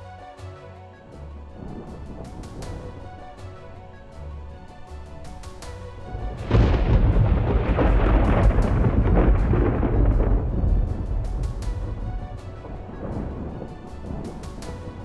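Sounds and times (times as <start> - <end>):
background music with steady beat: 0.0 - 15.0
thunder clap rumbling: 6.0 - 15.0.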